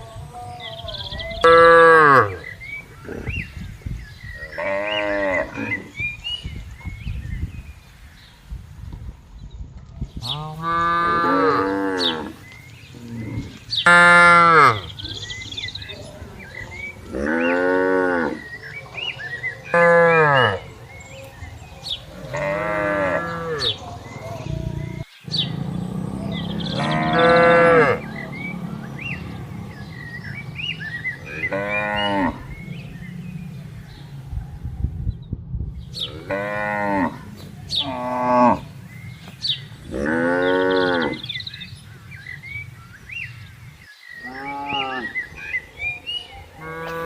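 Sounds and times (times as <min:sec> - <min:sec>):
cattle mooing: 0:10.3 - 0:12.4, 0:17.0 - 0:18.6, 0:22.1 - 0:33.6, 0:36.0 - 0:38.7, 0:39.9 - 0:41.3.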